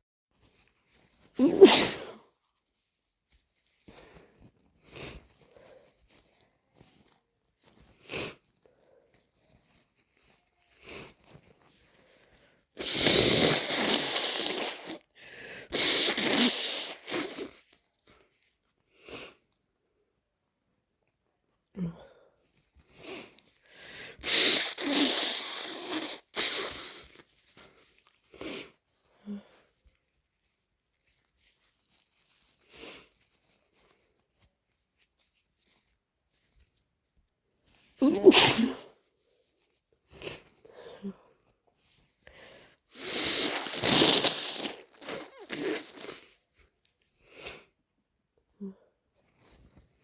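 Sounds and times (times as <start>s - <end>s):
person blowing nose: 1.4s - 2.2s, 12.8s - 17.7s, 23.9s - 27.3s, 38.0s - 39.0s, 42.9s - 46.4s
person sniffling: 1.4s - 2.2s, 12.8s - 17.6s, 23.0s - 27.1s, 38.0s - 39.0s, 42.3s - 46.4s
person sneezing: 1.4s - 2.3s, 12.8s - 15.0s, 15.7s - 17.6s, 24.2s - 27.0s, 38.0s - 39.0s, 43.0s - 46.2s.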